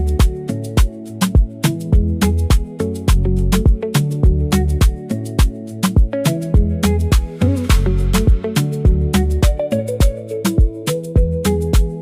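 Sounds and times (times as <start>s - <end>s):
afrobeat style music: 0.0s - 12.0s.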